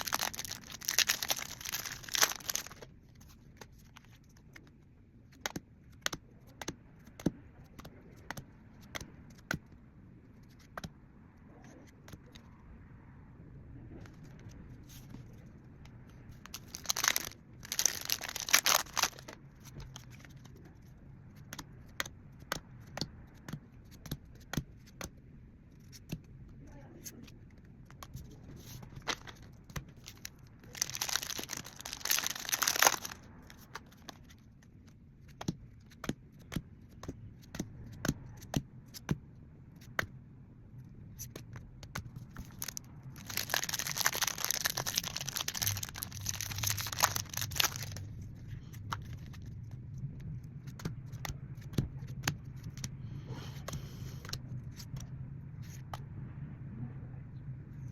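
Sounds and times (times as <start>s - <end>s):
packaging torn and crumpled: 0.0s - 2.9s, 16.5s - 19.4s, 29.0s - 33.3s, 42.4s - 48.0s.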